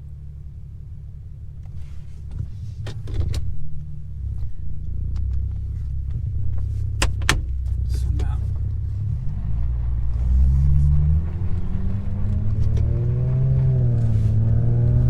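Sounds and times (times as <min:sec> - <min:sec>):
car engine idling: 0:00.0 - 0:12.8
sharp clicks and knocks: 0:06.1 - 0:08.7.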